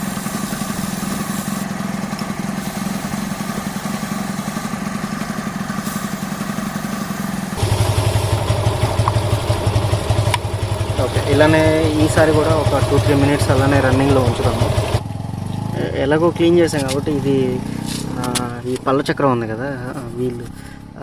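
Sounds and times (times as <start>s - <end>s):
motorcycle engine running: 0.0s - 21.0s.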